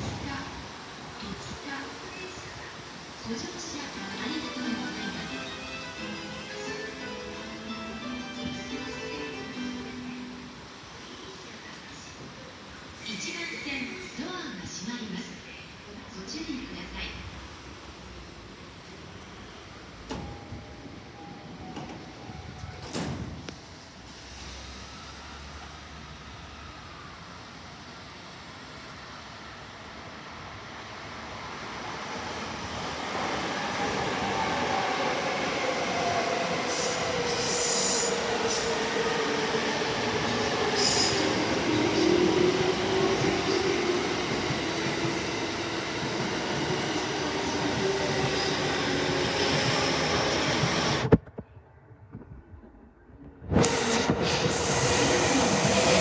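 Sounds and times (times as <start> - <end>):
train doors shutting: 19.2 - 26.0, 31.8 - 51.2, 53.4 - 56.0.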